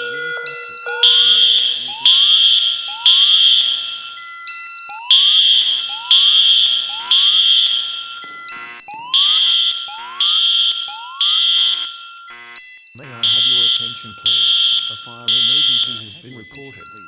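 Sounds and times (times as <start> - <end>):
rising whoop alarm tone: 0.0 - 3.9, 4.9 - 7.9, 8.9 - 11.8
fire alarm horn blasts: 0.0 - 17.0
steady alarm tone: 0.0 - 17.0.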